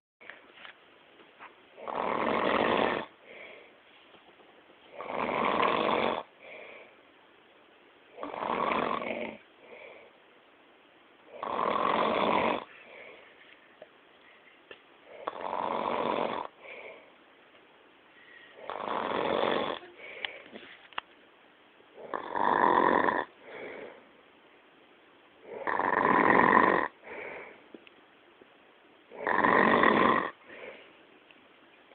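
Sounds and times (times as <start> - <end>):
loud snoring: 1.8 - 3.2, 4.9 - 6.3, 8.2 - 9.4, 11.3 - 12.7, 15.1 - 16.6, 18.6 - 19.9, 22.0 - 23.4, 25.5 - 27.0, 29.1 - 30.4.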